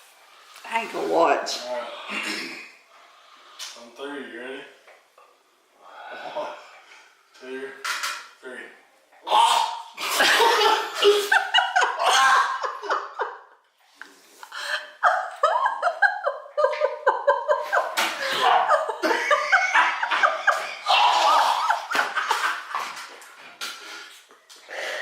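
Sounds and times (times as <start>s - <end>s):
men laughing loudly: 10.0s - 13.6s, 14.6s - 23.3s.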